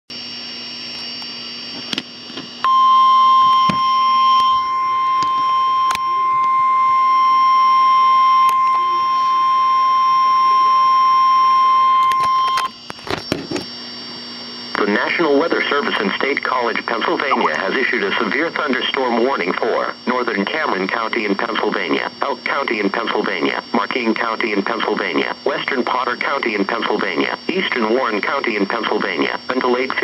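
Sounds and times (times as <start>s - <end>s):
steady alarm beep: 2.6s - 12.8s
radio receiver hiss: 14.8s - 20.0s
static crackles: 15.8s - 18.6s.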